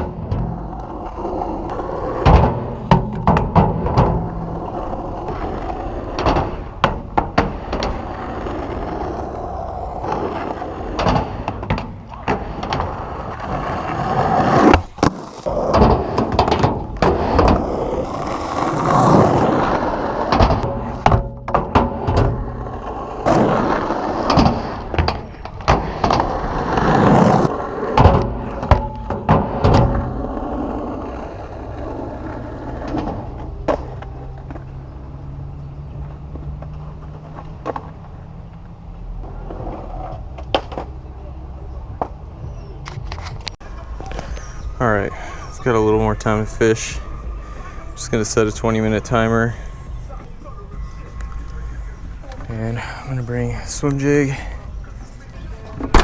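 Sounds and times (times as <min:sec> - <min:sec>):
skateboard clacking on ground: 0:00.0 - 0:35.4, 0:36.0 - 0:41.2, 0:53.7 - 0:56.0
skateboard wheels rumbling: 0:00.0 - 0:56.0.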